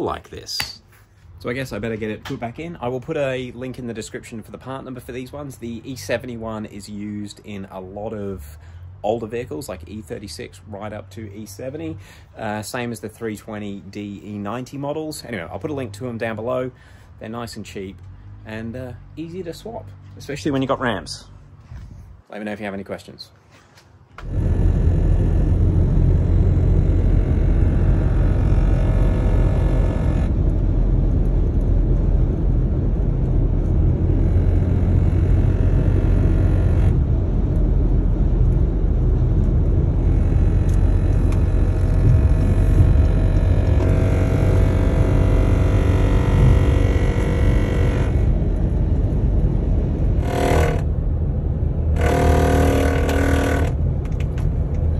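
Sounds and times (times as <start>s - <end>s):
car rumbling while driving: 24.2s - 54.9s.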